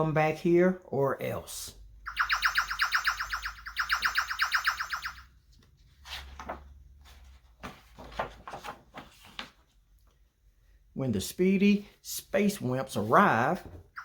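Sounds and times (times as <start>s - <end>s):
fast electronic pitched pulses: 2.0s - 5.3s.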